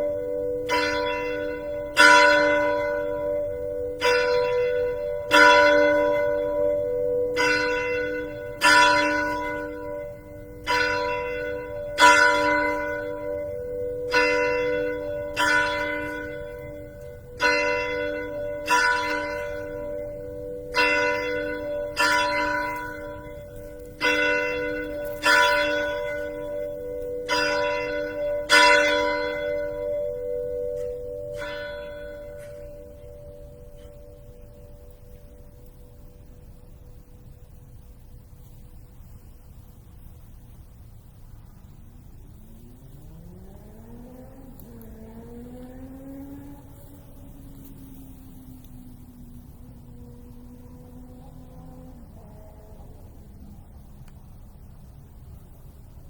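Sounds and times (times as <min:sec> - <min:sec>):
church bell tolling: 0:00.0 - 0:38.9, 0:43.0 - 0:53.9.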